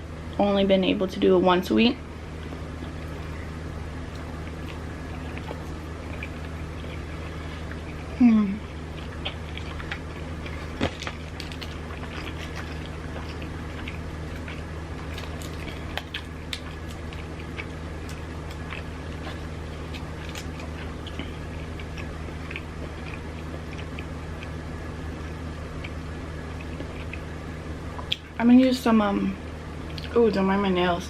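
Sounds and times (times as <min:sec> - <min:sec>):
steady low hum: 0:00.0 - 0:31.0
wet chewing mouth clicks: 0:28.0 - 0:28.3.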